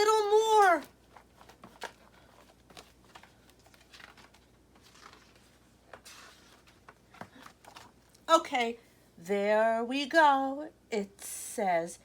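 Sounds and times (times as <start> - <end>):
picture book rustling and tapping: 0.0 - 8.3.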